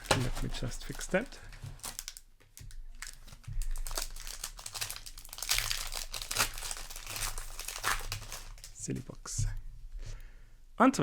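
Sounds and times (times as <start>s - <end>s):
cardboard crinkling and rustling: 0.0s - 9.4s.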